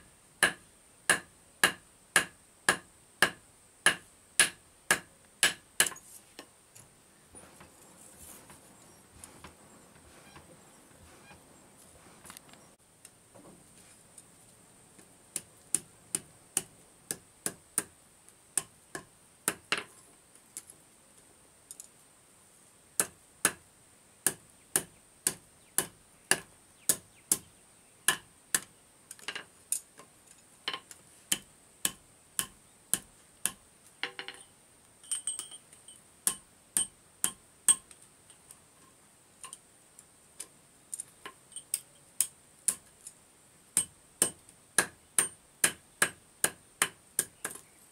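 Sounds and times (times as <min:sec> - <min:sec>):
hammer striking iron on anvil: 0:00.4 - 0:06.0.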